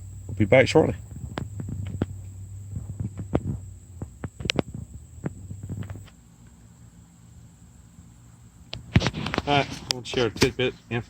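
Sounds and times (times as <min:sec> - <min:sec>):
low steady hum: 0:00.0 - 0:11.0
sharp clicks and knocks: 0:01.0 - 0:06.2.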